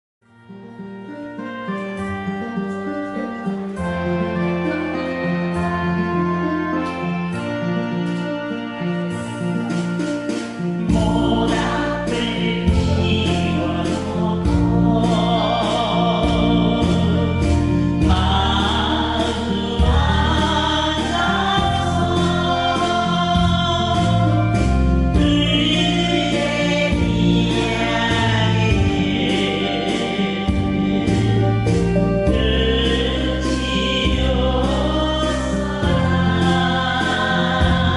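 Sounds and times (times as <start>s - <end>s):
song with group vocals: 9.1s - 37.9s.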